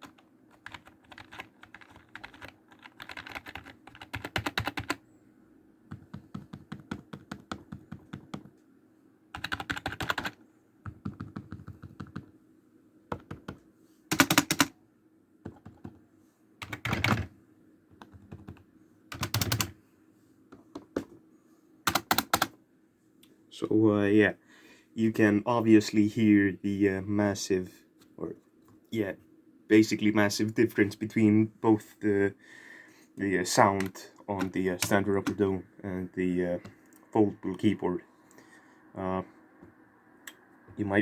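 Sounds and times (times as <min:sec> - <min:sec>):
rapid keyboard keystrokes: 0:00.0 - 0:05.0, 0:05.9 - 0:08.6, 0:09.4 - 0:12.3, 0:13.1 - 0:14.7, 0:15.5 - 0:16.0, 0:16.6 - 0:17.3, 0:18.0 - 0:19.8, 0:21.9 - 0:22.5.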